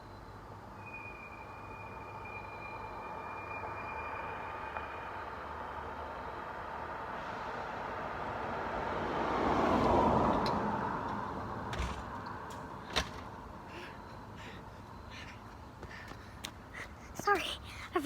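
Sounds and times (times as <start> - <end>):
vehicle passing: 5.0 - 18.0.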